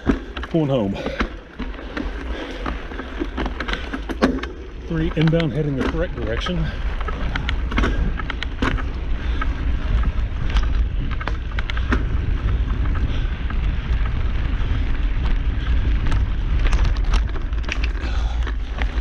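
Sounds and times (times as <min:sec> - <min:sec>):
bike clicks and rattles: 0:00.0 - 0:19.0
wind buffeting microphone: 0:00.0 - 0:19.0.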